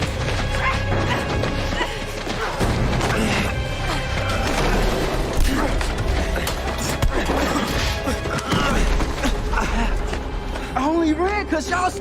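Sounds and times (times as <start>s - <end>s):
tense drama score: 0.0s - 12.0s.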